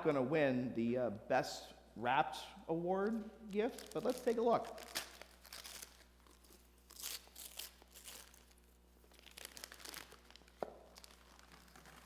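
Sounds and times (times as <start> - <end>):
wrapping paper tearing and rustling: 3.6 - 12.0.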